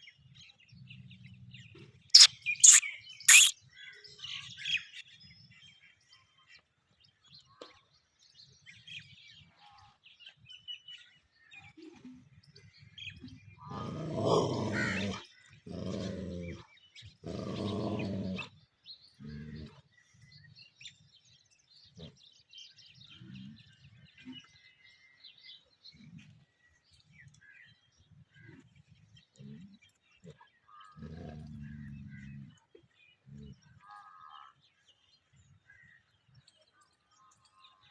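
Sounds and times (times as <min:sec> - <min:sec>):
faint birds chirping: 0:02.2 - 0:03.5
dogs growling: 0:13.7 - 0:16.6, 0:17.2 - 0:18.5, 0:31.0 - 0:32.7.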